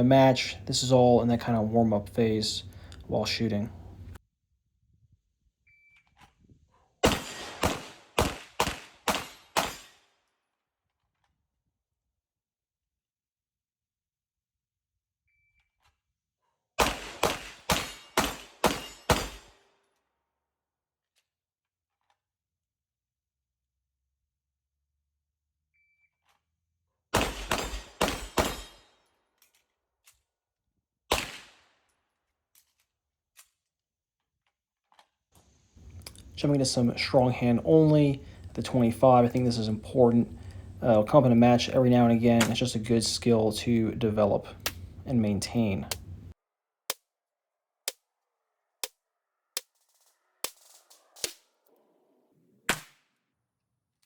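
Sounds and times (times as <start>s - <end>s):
pistol shots: 7.0s - 10.0s, 16.8s - 19.6s, 27.2s - 28.8s, 31.1s - 31.6s.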